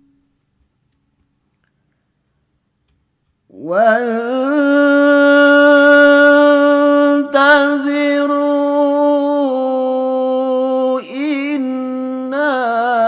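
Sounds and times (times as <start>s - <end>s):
person chanting recitation: 3.5s - 13.0s.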